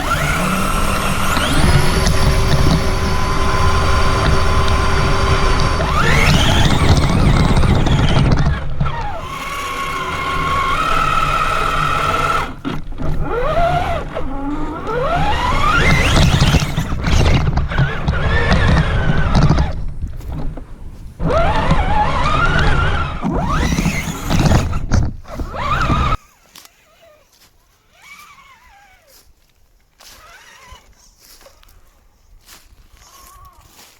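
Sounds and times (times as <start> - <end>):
tyres rumbling on rough ground: 0.0 - 26.2
electric motor whining: 0.0 - 27.2, 27.9 - 29.3, 30.0 - 31.0.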